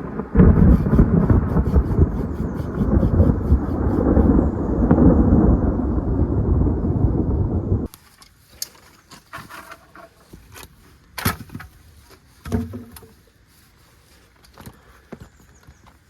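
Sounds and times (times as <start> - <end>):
low thunder rumble: 0.0 - 7.9
footsteps on woodland floor: 8.0 - 16.0.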